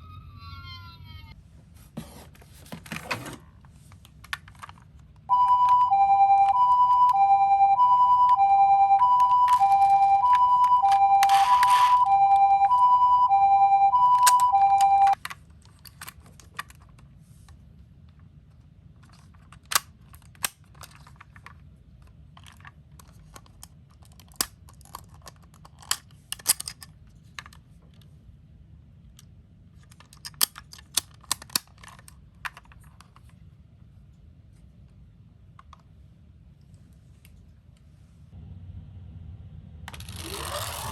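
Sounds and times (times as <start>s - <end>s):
toy siren two-tone: 5.3s - 15.2s.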